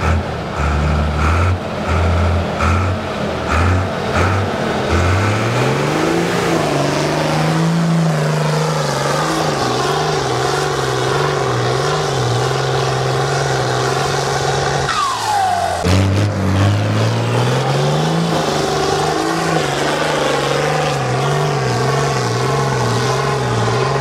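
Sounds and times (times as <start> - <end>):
diesel truck engine revving: 0.0 - 24.0.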